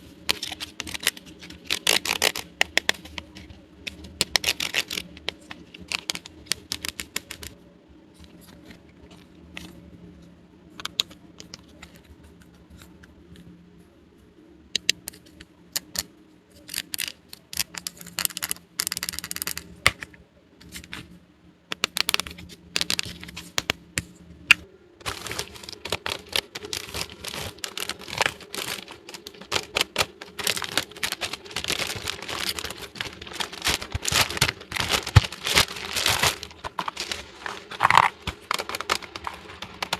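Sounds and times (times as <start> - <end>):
packaging tearing and crinkling: 0.3 - 7.6, 25.0 - 39.9
plastic toy pieces clicking: 0.3 - 7.6, 14.8 - 19.8
rustling: 25.0 - 39.9.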